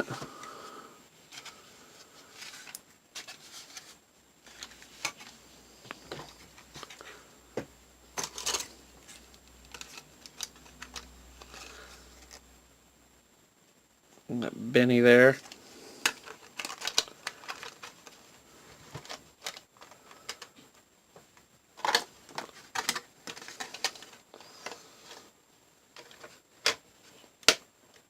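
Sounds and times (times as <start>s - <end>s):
plastic toy car clicks and rustling: 8.2s - 8.7s, 9.6s - 12.4s, 15.4s - 18.2s, 18.9s - 20.5s, 21.8s - 25.2s, 26.0s - 26.8s, 27.4s - 28.0s.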